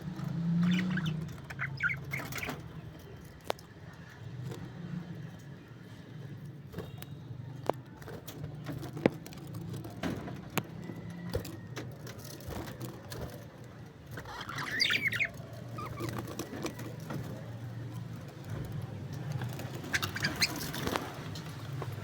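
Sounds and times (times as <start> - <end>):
budgerigar chirping: 0.6 - 2.6, 14.3 - 16.2, 19.8 - 20.8.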